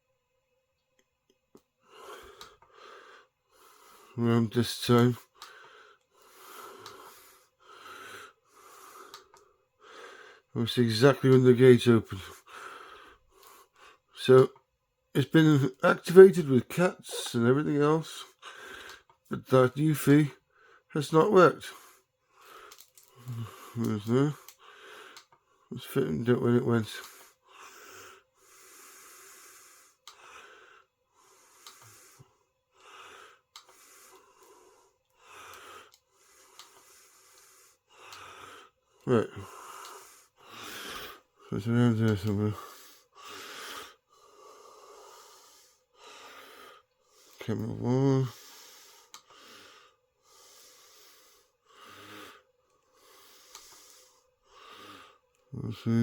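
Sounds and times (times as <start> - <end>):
person breathing: 1.8 - 4.3, 5.2 - 10.6, 12.2 - 14.2, 17.1 - 17.3, 18.2 - 19.1, 20.4 - 20.9, 21.7 - 25.8, 27.0 - 56.0.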